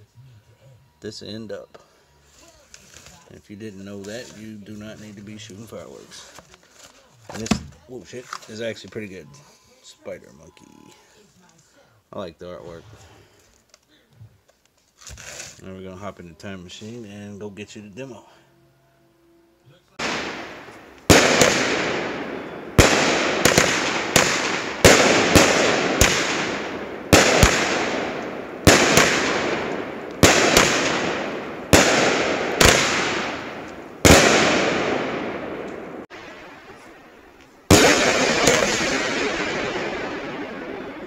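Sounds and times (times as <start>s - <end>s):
firework cake bangs: 20.0s - 36.1s, 37.7s - 41.0s.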